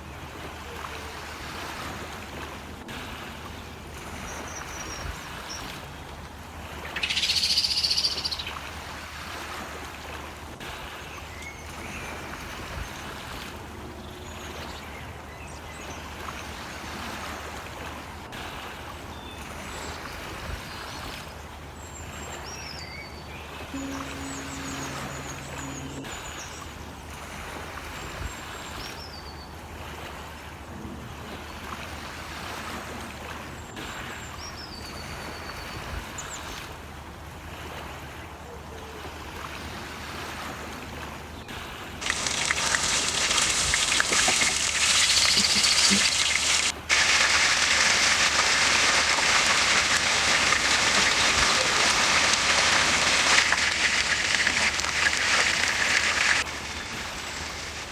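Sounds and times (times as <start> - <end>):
constant low hum: 23.5 - 28.6
high chirping glides: 23.8 - 26.7.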